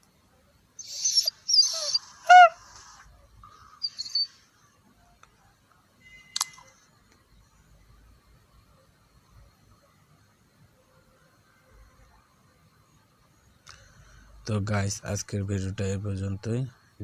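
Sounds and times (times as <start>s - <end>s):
sharp click: 6.4s - 6.7s.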